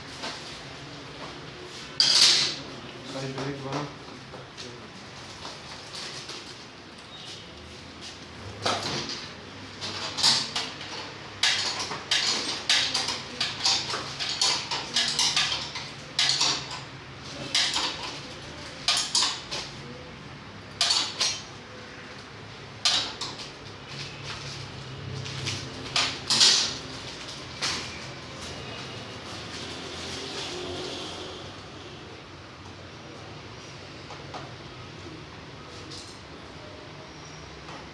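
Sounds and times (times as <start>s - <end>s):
metal tools clinking and knocking: 2.0s - 2.6s, 8.6s - 19.7s, 20.8s - 21.6s, 25.9s - 27.0s.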